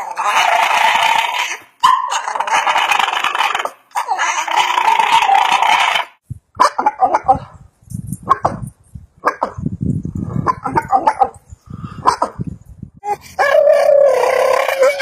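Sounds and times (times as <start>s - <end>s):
dog howling: 13.4s - 15.0s.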